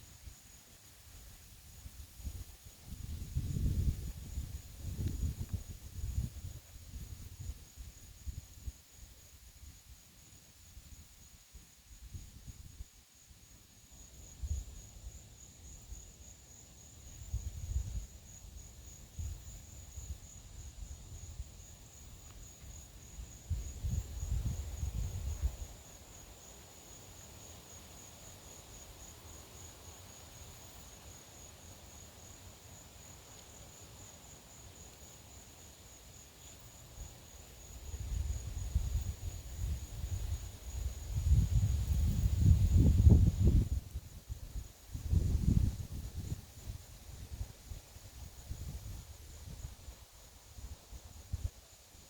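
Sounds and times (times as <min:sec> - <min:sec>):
wind buffeting the microphone: 0:01.8 - 0:08.8, 0:23.5 - 0:25.8, 0:37.8 - 0:50.0.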